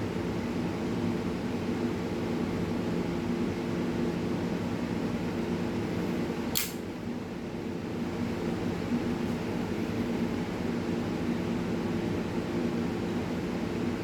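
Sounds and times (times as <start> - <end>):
hum and hiss of room machinery: 0.0 - 14.0
lighter lid snapping shut: 6.5 - 6.8.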